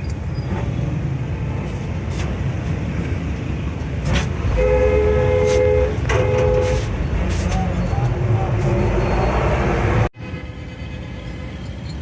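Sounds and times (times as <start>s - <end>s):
vehicle horn blasts: 4.5s - 6.9s.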